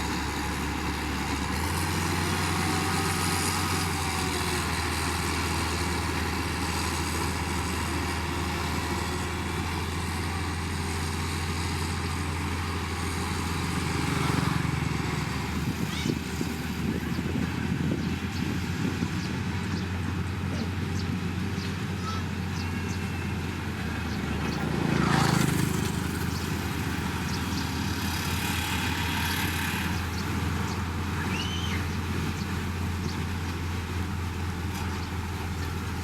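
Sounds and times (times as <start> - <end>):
diesel engine of heavy machinery: 0.0 - 36.0.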